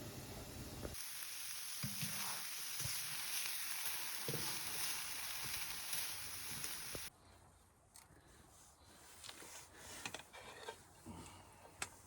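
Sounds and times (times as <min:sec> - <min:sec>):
food sizzling on a stove: 0:00.0 - 0:07.1.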